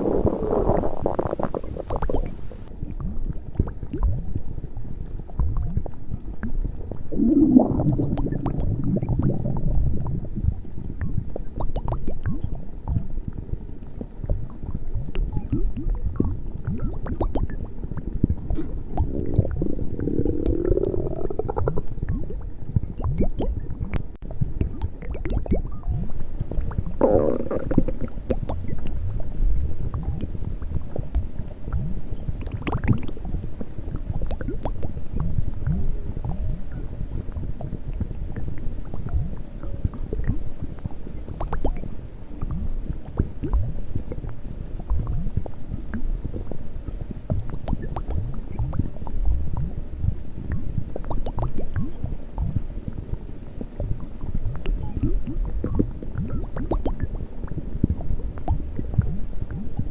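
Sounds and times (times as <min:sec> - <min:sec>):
stomach growling and gurgling: 0:00.0 - 0:59.9.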